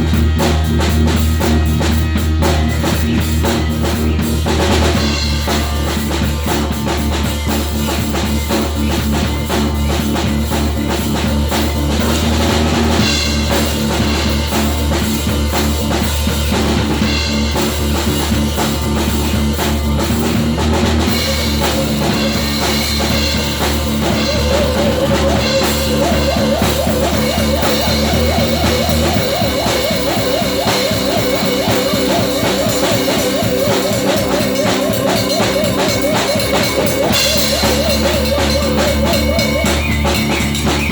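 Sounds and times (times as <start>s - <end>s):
rock music with drums and bass: 0.0s - 40.9s
wavering higher melodic line: 21.1s - 40.9s.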